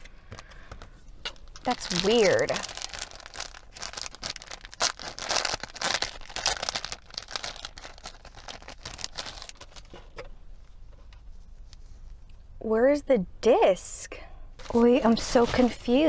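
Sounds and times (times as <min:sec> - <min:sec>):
packaging crinkling and rustling: 0:00.0 - 0:10.9.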